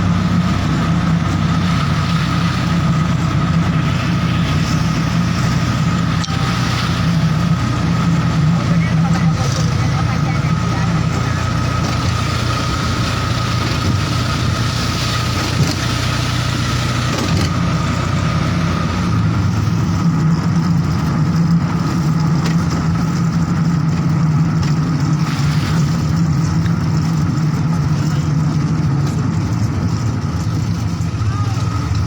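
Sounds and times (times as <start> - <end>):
vehicle engine running: 0.0 - 32.0.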